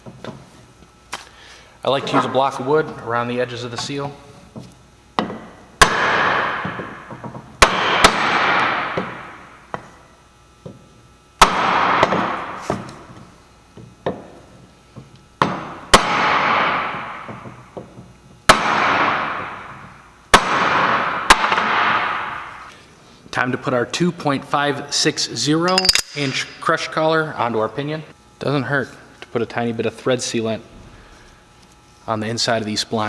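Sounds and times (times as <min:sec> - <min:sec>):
metallic ring: 0:25.7 - 0:26.8.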